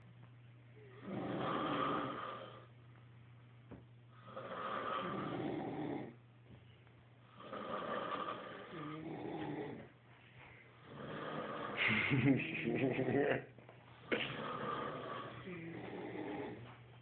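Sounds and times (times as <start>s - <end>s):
person snoring: 0.8s - 2.7s, 4.2s - 6.2s, 7.3s - 9.8s, 10.8s - 13.4s, 14.0s - 16.6s.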